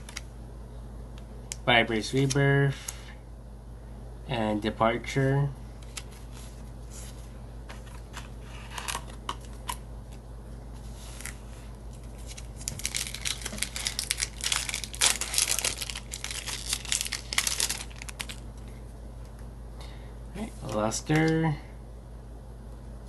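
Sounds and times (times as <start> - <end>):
foil wrapper tearing and crinkling: 12.1 - 18.4.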